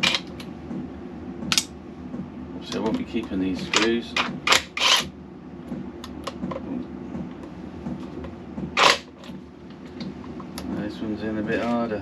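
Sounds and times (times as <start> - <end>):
screwdriver clicks and scrapes: 4.2 - 5.1.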